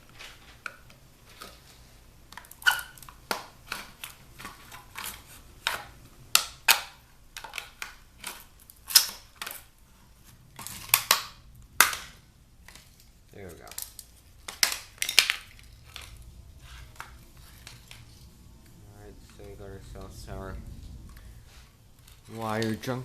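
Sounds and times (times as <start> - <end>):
plastic parts clicking and knocking: 2.3 - 9.7, 10.5 - 18.2.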